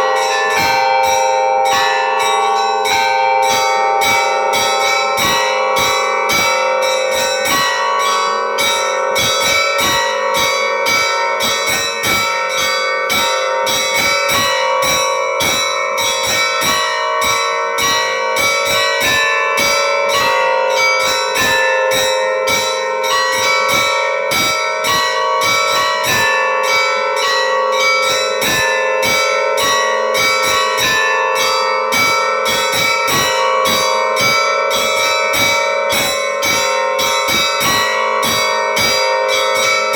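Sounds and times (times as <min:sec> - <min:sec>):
church bells ringing: 0:00.0 - 0:39.9.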